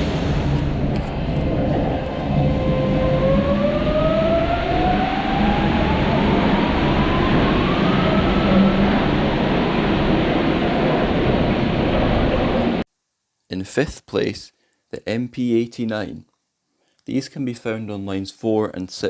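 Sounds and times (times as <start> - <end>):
train motor whine rising: 0.0 - 12.8
train rumble: 0.0 - 12.8.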